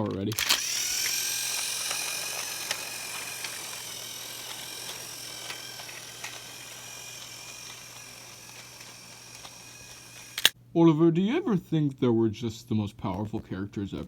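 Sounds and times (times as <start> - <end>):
faint clicks: 0.0 - 10.6
toy train motor whining: 0.0 - 10.6.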